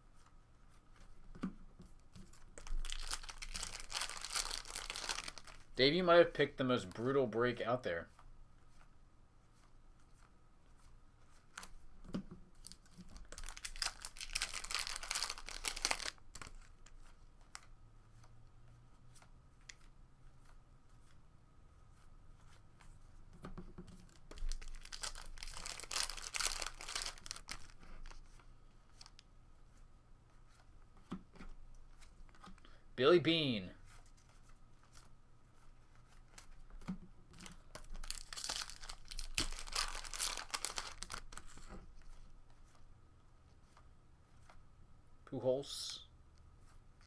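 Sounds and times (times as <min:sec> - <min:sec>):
cards clicking and rustling: 0:01.4 - 0:05.7, 0:11.4 - 0:17.7, 0:23.5 - 0:29.2, 0:35.9 - 0:41.7
card pack wrappers tearing: 0:02.6 - 0:05.7, 0:12.6 - 0:16.9, 0:24.1 - 0:28.2, 0:37.4 - 0:41.7.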